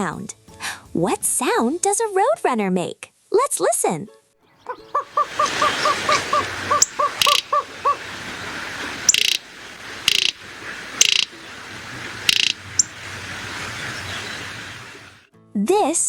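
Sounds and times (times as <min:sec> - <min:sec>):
bird calling short repeated notes: 0:04.6 - 0:11.5, 0:12.1 - 0:13.0
bird bill clattering rattles: 0:04.8 - 0:08.2, 0:09.0 - 0:11.3, 0:12.0 - 0:13.0.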